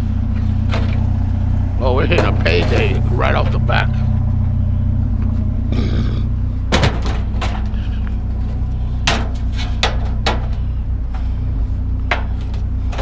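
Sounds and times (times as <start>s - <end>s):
vehicle engine idling: 0.0s - 13.0s
scrap metal knocks and clanks: 0.3s - 1.2s, 2.0s - 4.5s, 6.6s - 13.0s.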